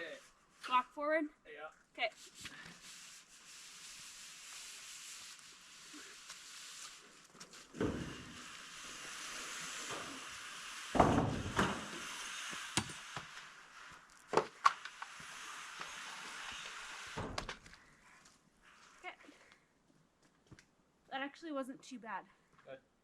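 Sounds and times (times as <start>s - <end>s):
roofing panel scraping: 2.9s - 17.7s.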